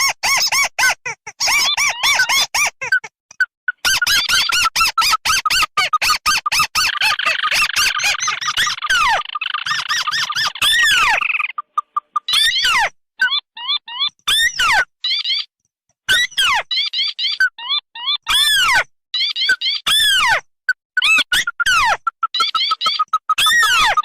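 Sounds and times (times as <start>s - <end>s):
crakes chirping: 6.5s - 12.7s, 21.0s - 24.0s.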